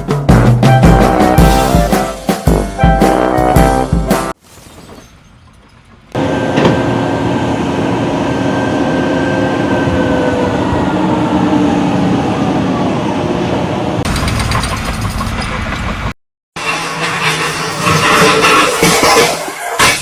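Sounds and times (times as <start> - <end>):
loud mechanical rumble: 6.2 - 19.2.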